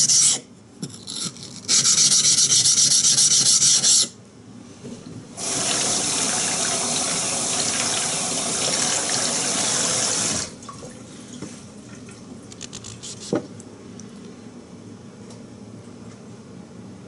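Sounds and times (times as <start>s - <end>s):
tap water running: 5.4s - 11.1s.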